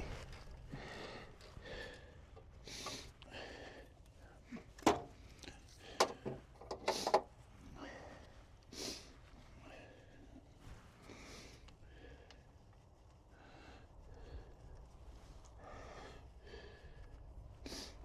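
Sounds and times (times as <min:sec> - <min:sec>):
person breathing: 0:00.0 - 0:18.0
tools knocking and clicking: 0:04.6 - 0:05.2, 0:06.0 - 0:07.3.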